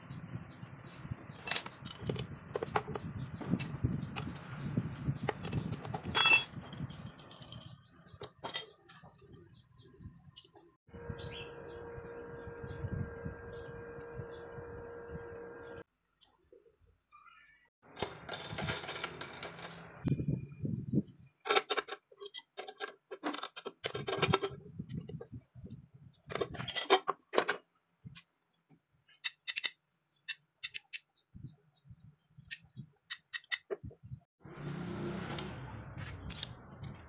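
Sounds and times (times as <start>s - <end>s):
clicks and rattling: 1.3s - 4.5s, 5.1s - 9.4s, 17.9s - 20.1s, 21.4s - 25.4s, 26.2s - 27.6s.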